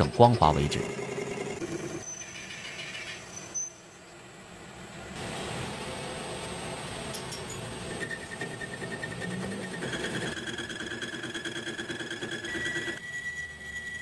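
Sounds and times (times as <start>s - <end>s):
metal lathe whine: 7.1s - 14.0s.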